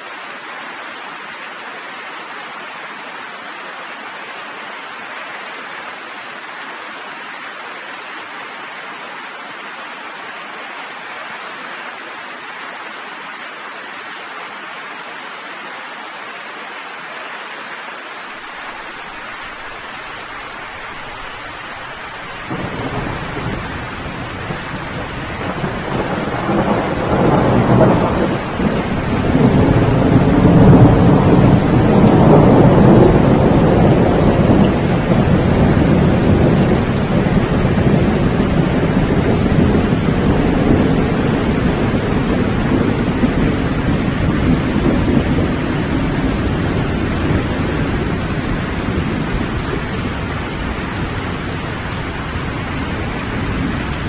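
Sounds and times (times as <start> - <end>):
steady rain falling: 0.0 - 54.0
low rumble of thunder: 22.4 - 54.0.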